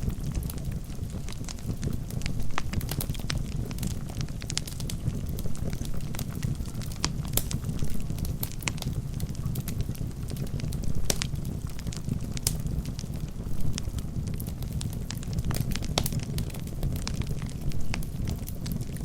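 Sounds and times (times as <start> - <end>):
logs crackling and popping: 0.0 - 19.0
low rumble of flames: 0.0 - 19.0.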